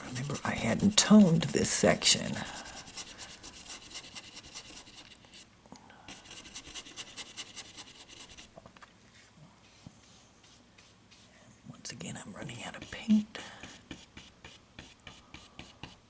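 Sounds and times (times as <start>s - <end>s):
paintbrush scrubbing on board: 0.0s - 5.4s, 6.1s - 8.5s, 9.7s - 11.3s.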